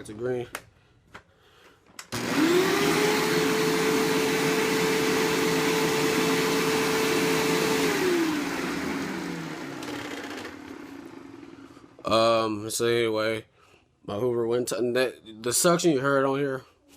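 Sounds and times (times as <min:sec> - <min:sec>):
vacuum cleaner motor running: 0:02.1 - 0:12.2.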